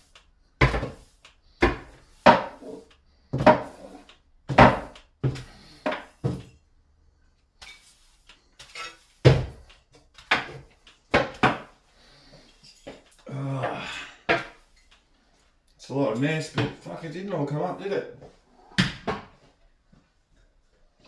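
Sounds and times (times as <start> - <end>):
hard objects knocking and clattering: 0.6 - 1.0, 4.5 - 6.6, 8.6 - 11.8.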